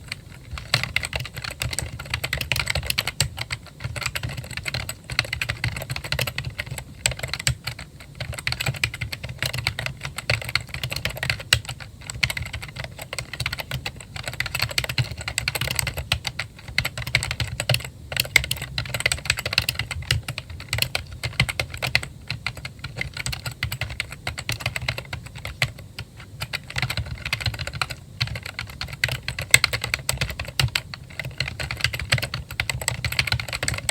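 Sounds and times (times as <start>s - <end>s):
keyboard typing quickly: 0.0s - 33.9s.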